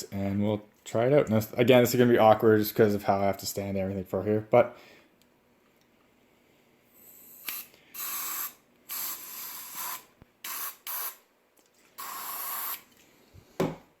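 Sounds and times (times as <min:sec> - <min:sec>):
aerosol spray hissing: 0:07.4 - 0:11.2, 0:12.0 - 0:12.8.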